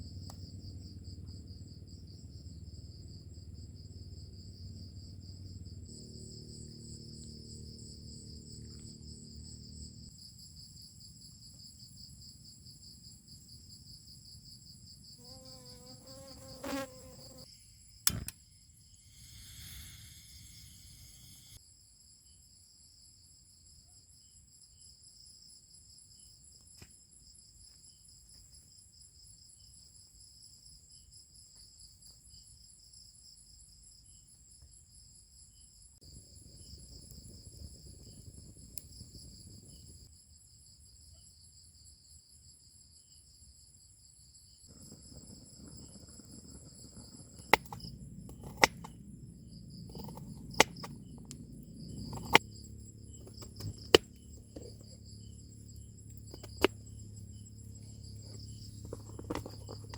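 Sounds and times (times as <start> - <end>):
crickets and insects trilling: 0.0 - 18.0, 18.6 - 21.8, 42.9 - 59.9.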